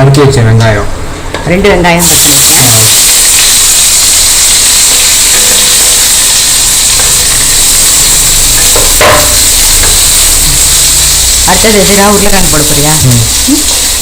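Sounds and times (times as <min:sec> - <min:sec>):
onions sizzling in hot oil: 0:02.0 - 0:14.0
short sharp knock: 0:08.8 - 0:10.0.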